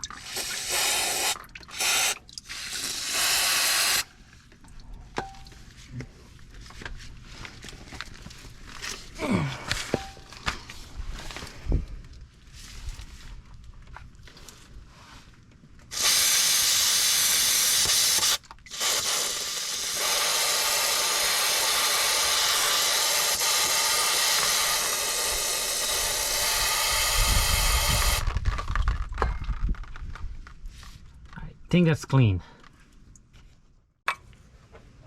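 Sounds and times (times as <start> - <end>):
aerosol spray hissing: 0.3 - 4.1, 15.9 - 28.2.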